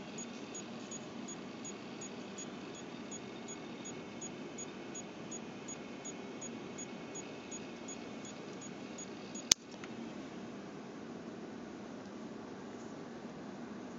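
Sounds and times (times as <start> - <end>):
steady low hum: 0.0 - 13.9
sharp click: 9.4 - 10.0.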